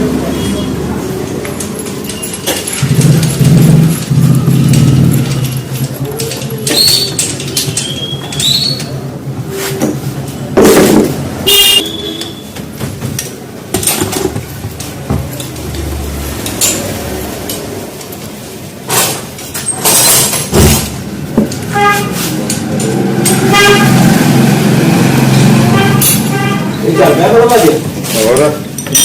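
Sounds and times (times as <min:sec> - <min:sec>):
passing road traffic: 0:00.0 - 0:29.0
metallic knocks and clanks: 0:01.4 - 0:23.7, 0:27.9 - 0:29.0
vehicle horns honking: 0:11.4 - 0:12.6, 0:21.6 - 0:22.4, 0:23.0 - 0:27.6.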